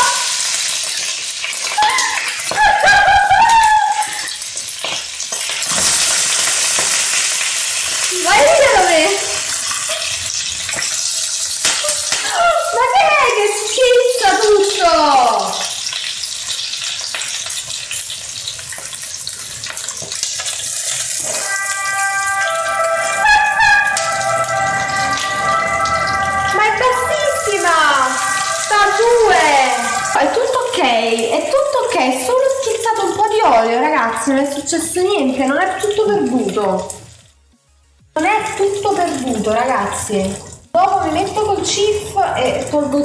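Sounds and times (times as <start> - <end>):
vegetables sizzling in oil: 0.0 - 37.4, 38.1 - 43.0
music: 21.2 - 31.3, 33.9 - 43.0
high-pitched voice: 21.3 - 31.6.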